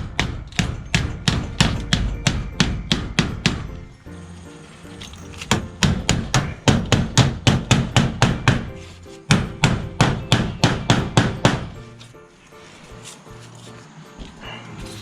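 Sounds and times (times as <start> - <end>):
hammer driving nails: 0.0 - 3.9, 4.9 - 12.0
background music: 0.0 - 15.0.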